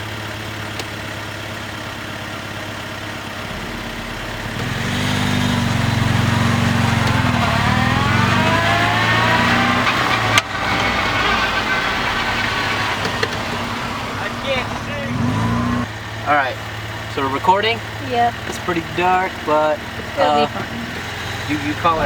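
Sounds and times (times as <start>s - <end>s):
car engine accelerating: 2.9s - 22.0s
rising engine whine: 3.2s - 15.9s, 20.0s - 22.0s.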